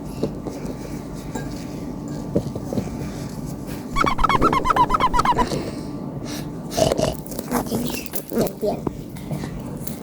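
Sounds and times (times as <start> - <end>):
bird-like chirps: 4.0 - 5.5.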